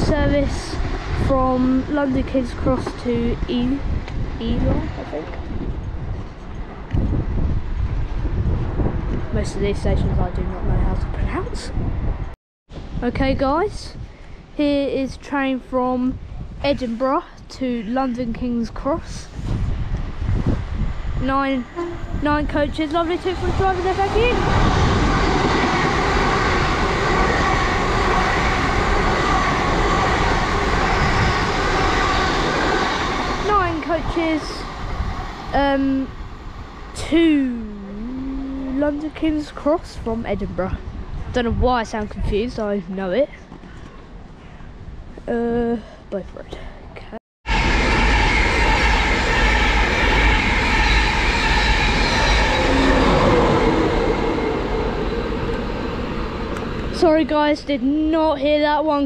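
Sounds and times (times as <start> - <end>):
train wheels rumbling on rails: 0.0 - 14.0, 14.6 - 44.2, 47.5 - 59.0.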